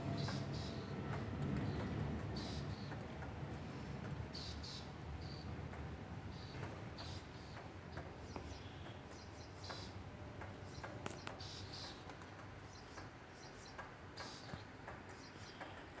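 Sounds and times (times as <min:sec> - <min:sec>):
light sharp clicks: 0:09.6 - 0:13.1.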